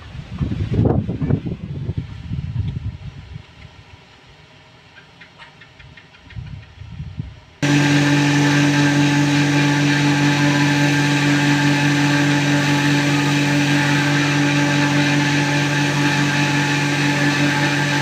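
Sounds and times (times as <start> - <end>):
power tool motor whining: 7.6 - 18.0.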